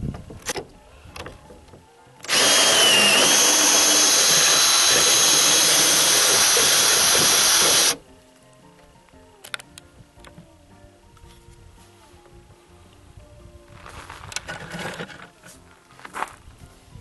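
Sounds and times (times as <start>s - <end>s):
hand drill boring into wood: 2.2s - 8.0s.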